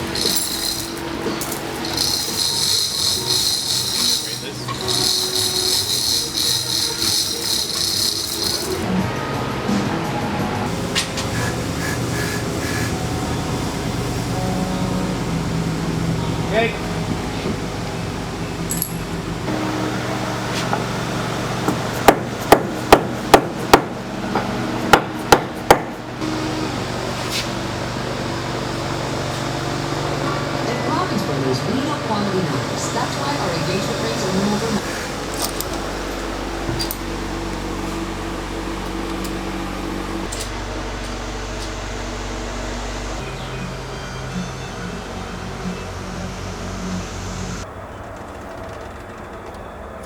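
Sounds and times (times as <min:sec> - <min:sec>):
motor humming: 0:00.0 - 0:22.4.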